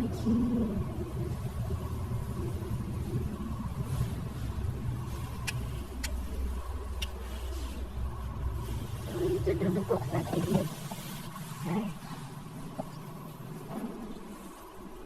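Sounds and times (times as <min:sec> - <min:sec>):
motor rumbling: 0:00.0 - 0:15.0
thin steady hum: 0:00.0 - 0:15.0
sharp clicks: 0:05.4 - 0:06.2.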